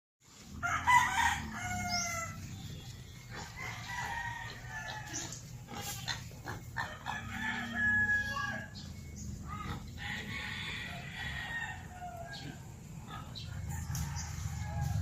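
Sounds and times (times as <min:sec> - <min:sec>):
rooster crowing: 0:00.6 - 0:02.4, 0:03.5 - 0:05.2, 0:06.8 - 0:08.8, 0:09.5 - 0:12.7, 0:13.4 - 0:15.0.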